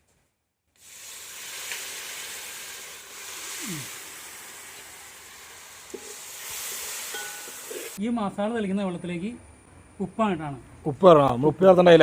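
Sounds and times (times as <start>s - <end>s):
spices sizzling in a hot pan: 0.8s - 8.0s.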